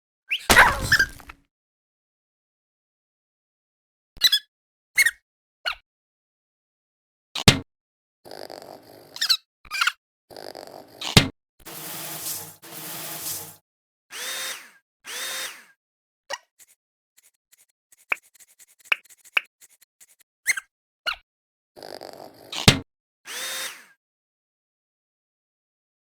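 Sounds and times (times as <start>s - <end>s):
sharp loud hit: 0.5s - 1.3s.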